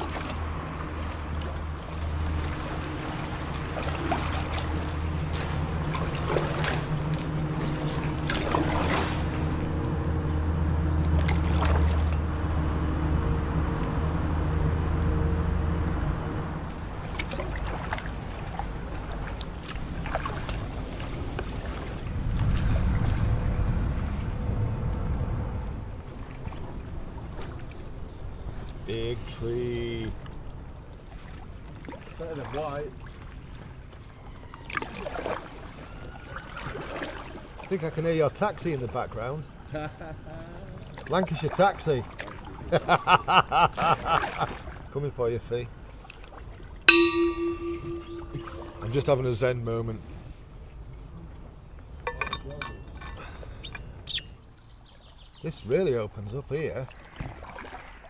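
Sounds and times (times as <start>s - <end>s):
kayak paddle splashes: 0.0s - 9.9s, 10.9s - 12.2s, 16.7s - 23.4s, 30.1s - 39.7s, 40.6s - 45.0s, 45.7s - 52.2s, 56.7s - 58.0s
boat engine humming: 0.0s - 58.0s
low rumble: 22.0s - 27.1s, 46.9s - 49.5s.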